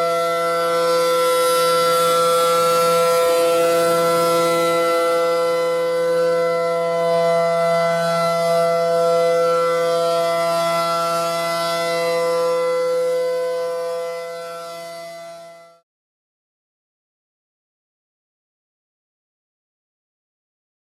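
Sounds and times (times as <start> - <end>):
tornado warning siren: 0.0 - 15.8.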